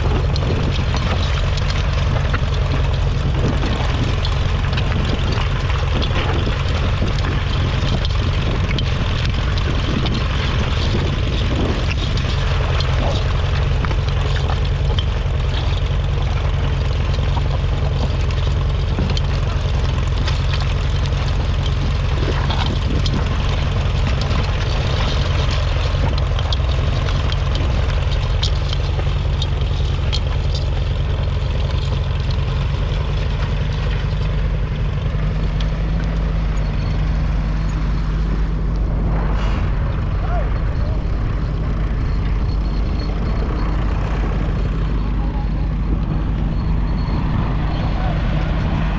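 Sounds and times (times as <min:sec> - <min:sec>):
tractor engine running: 0:00.0 - 0:48.9.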